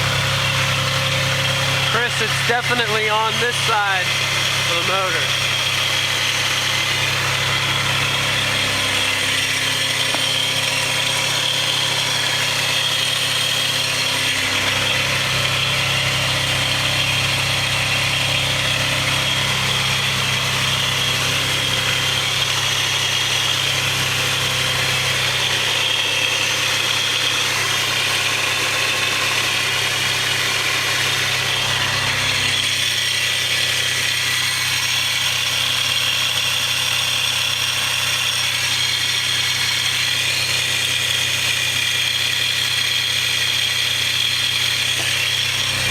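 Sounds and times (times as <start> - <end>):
car engine idling: 0.0 - 45.9
high whine: 0.9 - 5.5.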